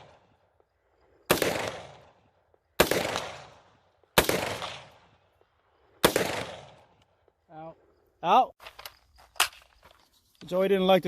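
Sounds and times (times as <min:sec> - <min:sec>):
rifle shots with echo: 0:00.0 - 0:00.4, 0:01.3 - 0:05.3, 0:06.0 - 0:07.0.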